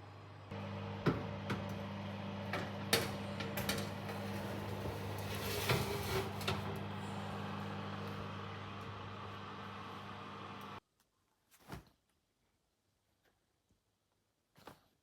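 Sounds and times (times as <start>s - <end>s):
low mechanical hum: 0.0s - 10.8s.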